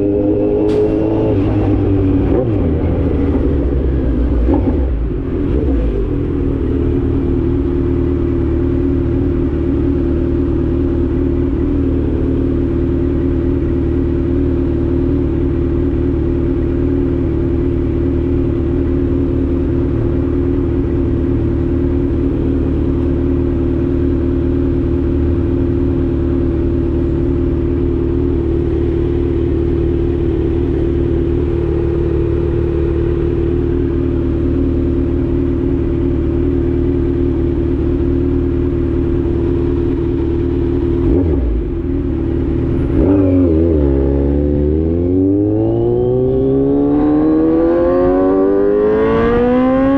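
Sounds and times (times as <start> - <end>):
motorcycle engine cruising: 0.0 - 49.9.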